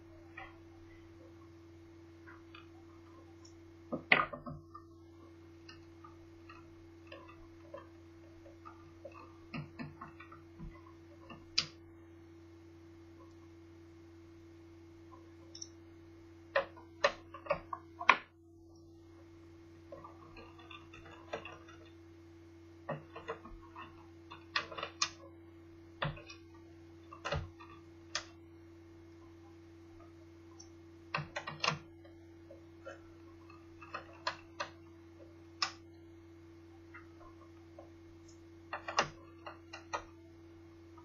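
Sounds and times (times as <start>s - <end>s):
steady low hum: 0.0s - 41.0s
clicks and taps of plastic parts: 5.6s - 11.8s, 16.5s - 18.3s, 22.9s - 25.2s, 26.0s - 28.4s, 30.6s - 35.9s, 36.9s - 40.2s.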